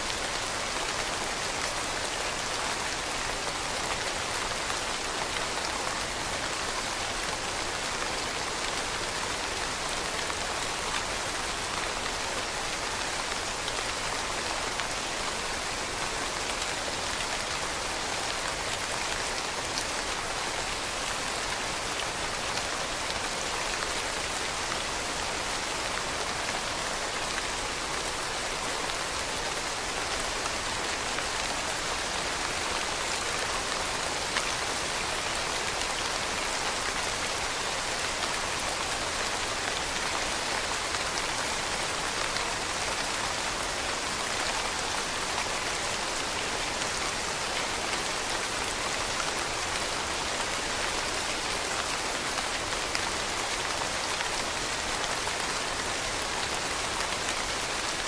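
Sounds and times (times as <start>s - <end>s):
rain falling on leaves: 0.0s - 58.0s.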